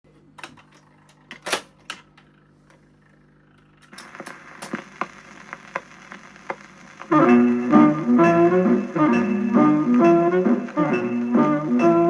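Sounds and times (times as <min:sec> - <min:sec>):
record hiss and crackle: 0:00.4 - 0:12.0
record clicks: 0:03.9 - 0:09.0
record pop: 0:04.0 - 0:12.0.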